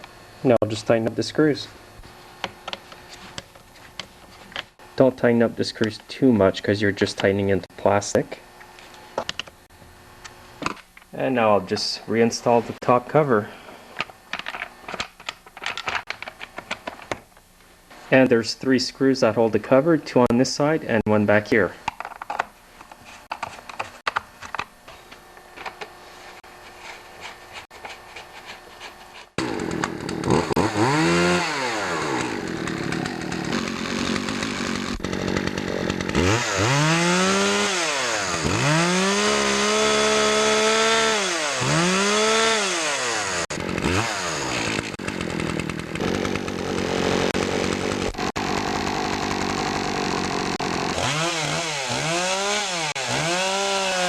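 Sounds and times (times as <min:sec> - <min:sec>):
chainsaw engine revving: 0:29.4 - 0:54.0.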